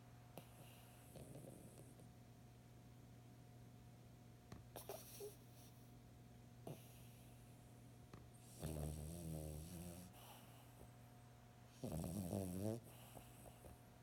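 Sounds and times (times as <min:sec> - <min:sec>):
snoring: 0:00.4 - 0:01.9, 0:08.4 - 0:10.4, 0:11.8 - 0:13.7.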